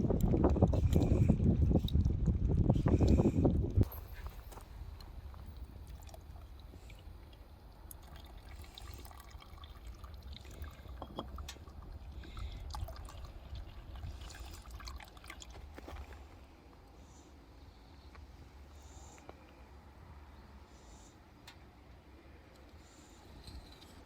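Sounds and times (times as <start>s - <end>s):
steady low rumble: 0.0s - 20.8s
liquid pouring and dripping: 5.3s - 16.1s.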